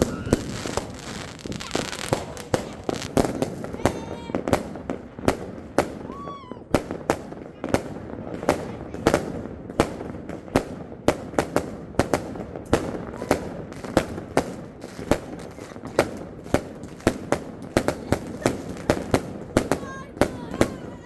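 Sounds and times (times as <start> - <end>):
fireworks bangs: 0.0 - 21.0.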